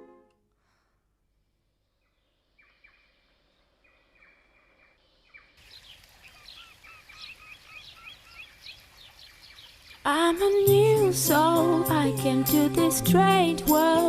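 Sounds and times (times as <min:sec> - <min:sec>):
outdoor background noise: 0:00.0 - 0:13.8
birds chirping quickly: 0:01.9 - 0:10.4.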